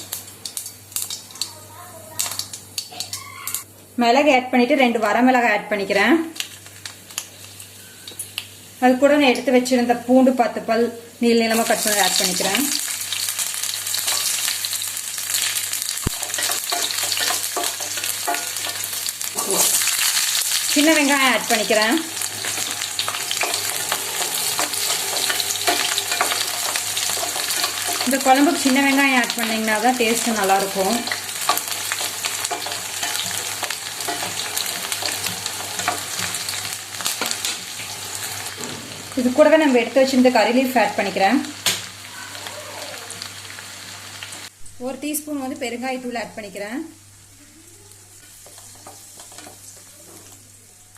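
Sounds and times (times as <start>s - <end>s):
food sizzling in hot oil: 0.0s - 3.7s, 5.9s - 50.9s
spatula stirring: 16.1s - 38.4s, 48.2s - 50.4s.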